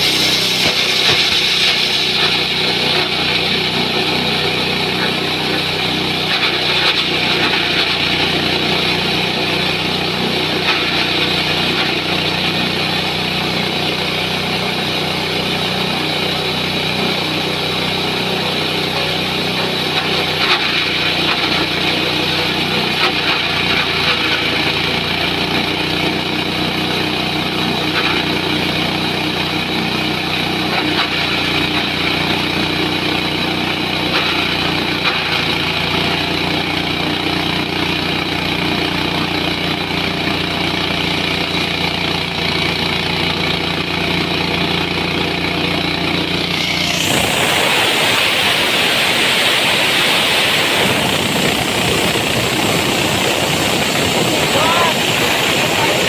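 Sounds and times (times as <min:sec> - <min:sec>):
hissy machine whir: 0:00.0 - 0:08.1, 0:46.5 - 0:56.0
chopper machine humming: 0:00.0 - 0:56.0.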